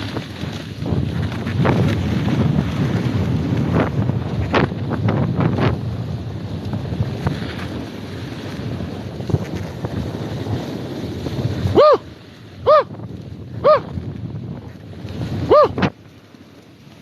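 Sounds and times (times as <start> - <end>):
wind rushing over microphone: 0.0 - 16.1.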